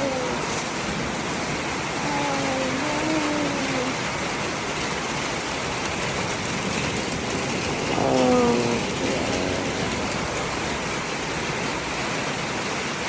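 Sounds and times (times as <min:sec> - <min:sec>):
heavy rain pouring: 0:00.0 - 0:13.0
short pitched vocal sounds: 0:07.9 - 0:10.2.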